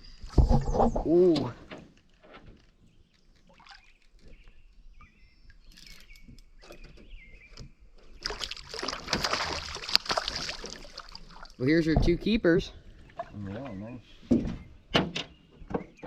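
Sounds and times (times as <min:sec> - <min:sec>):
fish splashing and dripping: 0:03.2 - 0:04.4, 0:08.2 - 0:11.6.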